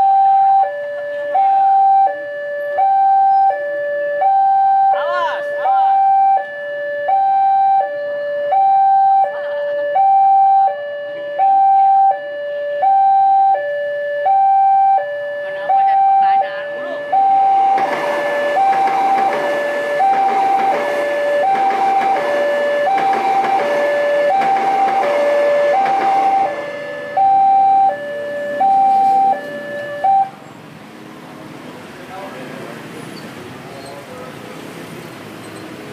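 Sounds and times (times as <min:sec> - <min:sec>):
level crossing alarm: 0:00.0 - 0:30.4
train passing: 0:15.4 - 0:35.9.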